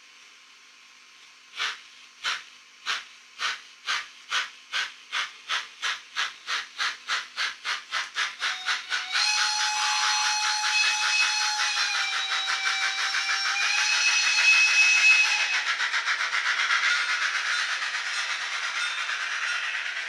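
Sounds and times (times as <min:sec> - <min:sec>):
faint hiss: 0:00.0 - 0:08.9
model train steam chuffs: 0:01.2 - 0:20.0
locomotive whistle: 0:08.4 - 0:15.8.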